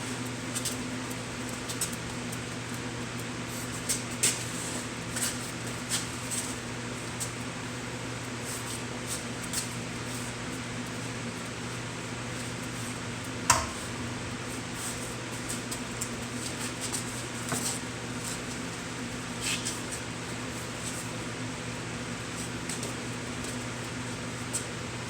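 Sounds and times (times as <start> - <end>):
low fan-like hum: 0.0 - 25.0
sharp knock: 13.5 - 13.9.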